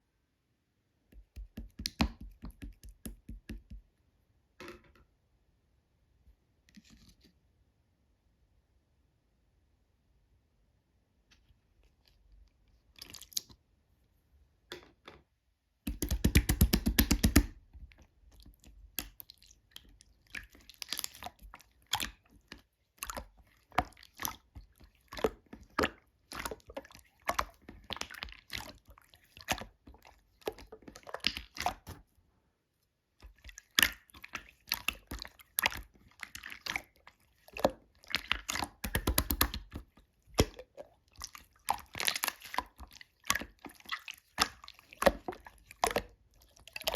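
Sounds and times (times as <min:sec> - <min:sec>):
slime squished by hand: 0:33.3 - 0:46.9.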